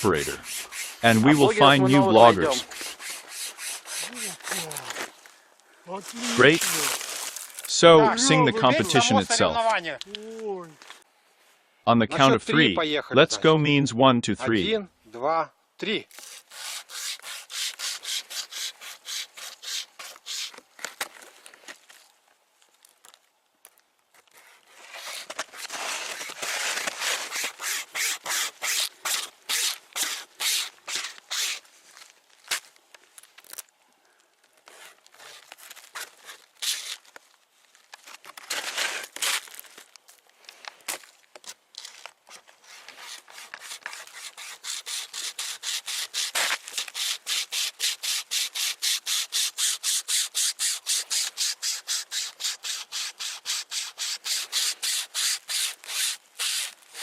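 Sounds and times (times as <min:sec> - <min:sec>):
string saw rasping through wood: 0:00.0 - 0:05.1, 0:16.1 - 0:20.6, 0:24.3 - 0:31.6, 0:42.6 - 0:57.0.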